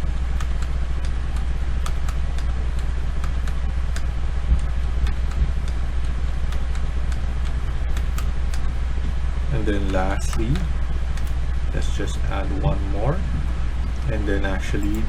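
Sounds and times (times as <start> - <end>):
computer mouse clicks: 0.0 - 8.7, 9.9 - 11.4
low electrical hum: 0.0 - 15.0.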